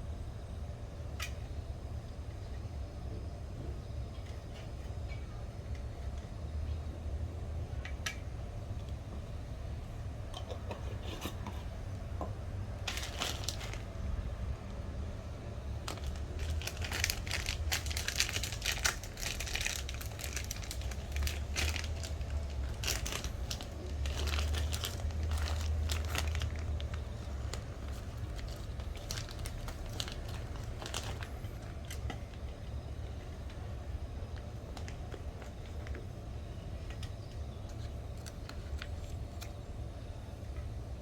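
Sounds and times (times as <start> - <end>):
steady low rumble: 11.8 - 41.0
packaging crinkling and rustling: 12.8 - 39.8.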